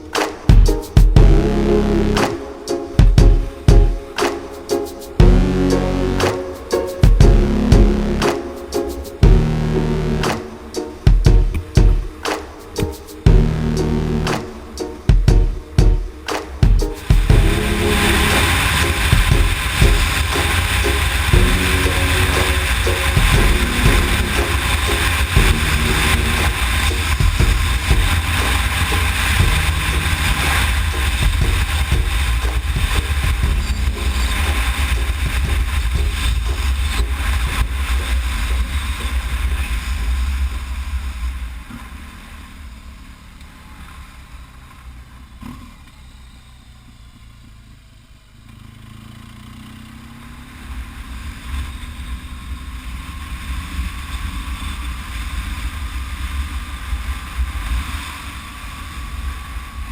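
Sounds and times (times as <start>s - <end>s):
motorcycle engine running: 0.5s - 1.7s, 5.2s - 5.7s, 15.1s - 39.9s.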